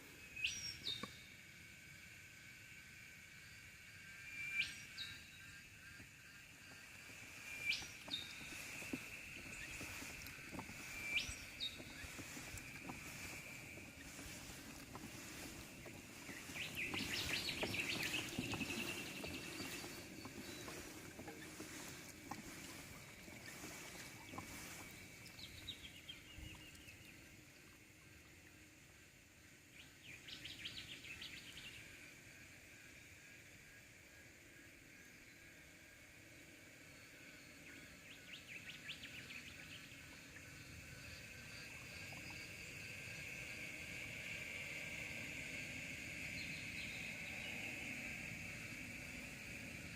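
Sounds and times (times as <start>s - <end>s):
insects droning: 0.0s - 49.9s
steady high thin tone: 7.2s - 25.6s
bird chirping: 7.3s - 27.3s
water splashing around kayak: 7.5s - 27.2s.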